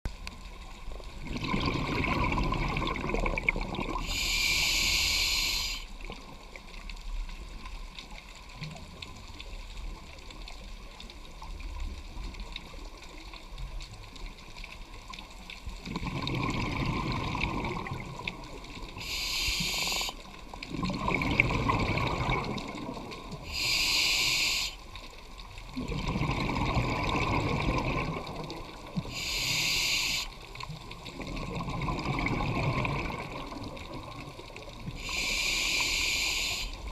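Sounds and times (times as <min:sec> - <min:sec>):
bubbling exhalations: 0:01.2 - 0:04.1, 0:15.9 - 0:18.4, 0:20.7 - 0:23.6, 0:25.8 - 0:28.4, 0:31.1 - 0:34.1
hissing regulator inhalations: 0:04.0 - 0:06.0, 0:19.0 - 0:20.3, 0:23.5 - 0:24.8, 0:29.0 - 0:30.4, 0:35.0 - 0:36.9.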